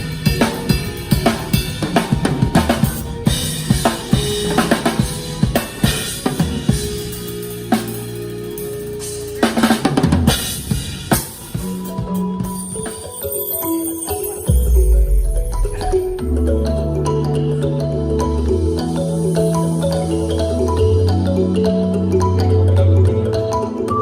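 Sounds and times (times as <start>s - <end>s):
drum kit played fast: 0.0s - 17.7s
held low notes: 14.5s - 23.6s.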